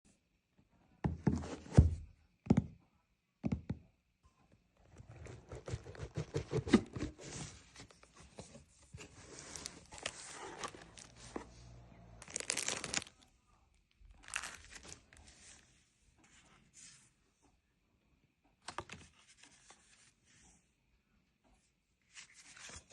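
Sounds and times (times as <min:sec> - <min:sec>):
sharp ripping: 0:12.2 - 0:13.1
paper tearing and crinkling: 0:12.2 - 0:13.2, 0:14.2 - 0:15.2.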